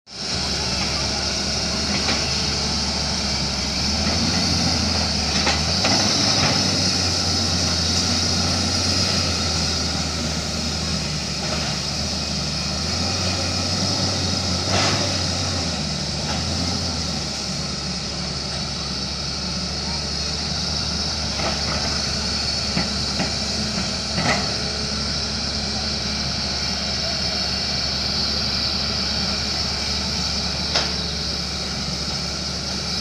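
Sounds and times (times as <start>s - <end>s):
diesel digger engine running: 0.1s - 33.0s.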